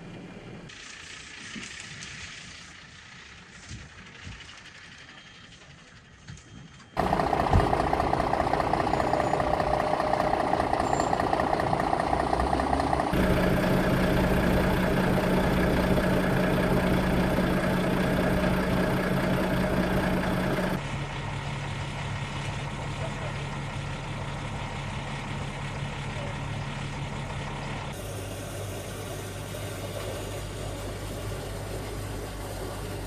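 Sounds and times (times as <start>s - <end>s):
engine running: 7.0s - 33.0s.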